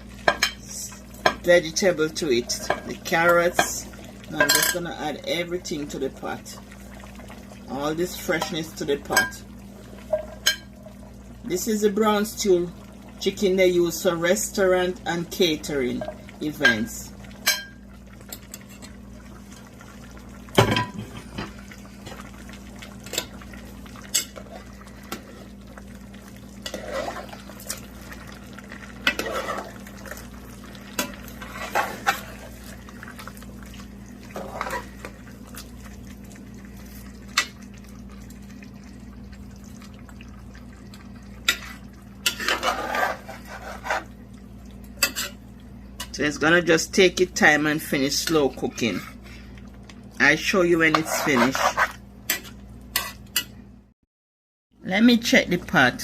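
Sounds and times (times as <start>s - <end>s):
spoon stirring and scraping pot: 23.0s - 25.6s, 26.6s - 35.7s, 41.4s - 44.2s, 45.0s - 45.4s, 50.8s - 53.6s.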